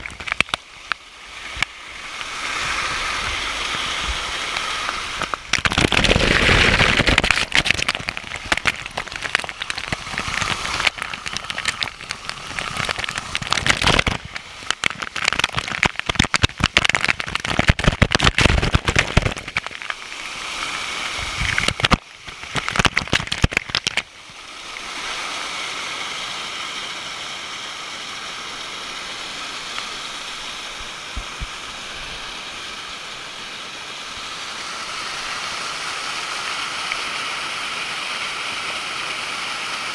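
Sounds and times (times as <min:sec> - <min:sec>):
waterfall splashing: 0:00.0 - 0:39.9.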